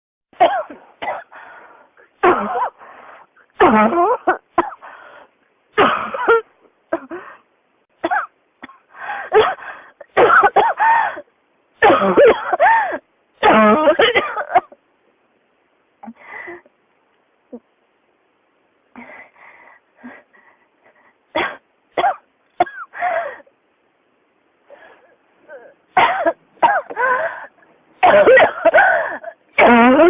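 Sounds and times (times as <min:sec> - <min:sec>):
person coughing: 0:02.2 - 0:02.8, 0:05.8 - 0:07.2, 0:11.8 - 0:14.7, 0:26.0 - 0:27.2, 0:28.0 - 0:30.0.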